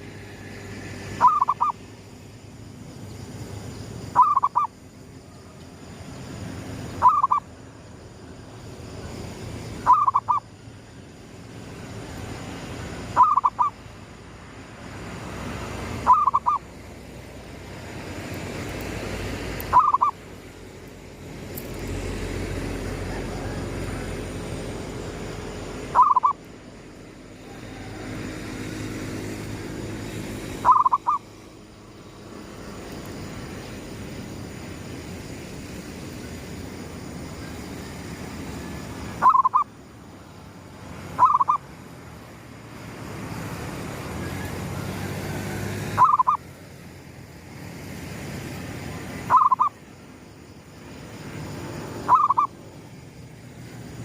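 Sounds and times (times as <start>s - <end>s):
dove cooing: 1.2s - 1.7s, 13.2s - 13.7s, 26.0s - 26.4s, 30.6s - 31.2s, 39.2s - 39.6s, 41.2s - 41.6s, 46.0s - 46.4s, 49.3s - 49.7s, 52.1s - 52.5s.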